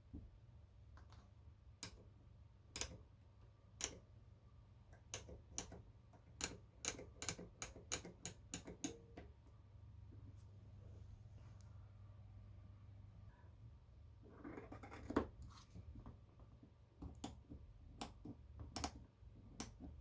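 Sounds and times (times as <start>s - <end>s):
faint low hum: 0.0s - 20.0s.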